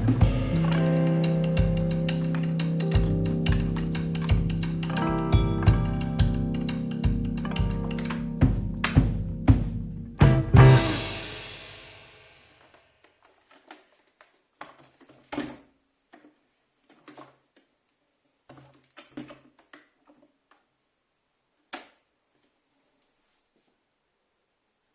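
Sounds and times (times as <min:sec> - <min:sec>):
music hit: 0:00.0 - 0:12.4.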